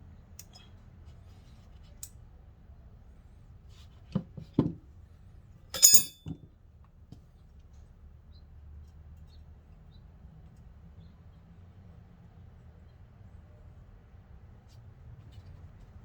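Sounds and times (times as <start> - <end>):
metallic clink: 5.8 - 6.4.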